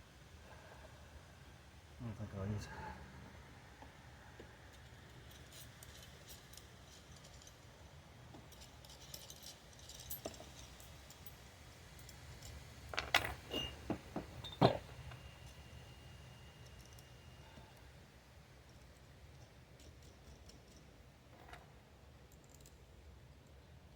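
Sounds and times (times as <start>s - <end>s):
hand tools clinking on metal: 8.4s - 17.8s.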